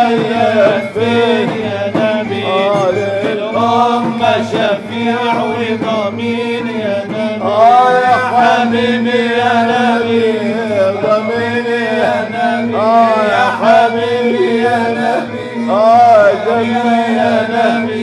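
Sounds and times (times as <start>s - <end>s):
man singing melodic phrases: 0.0s - 6.0s
instrumental drone: 0.0s - 18.0s.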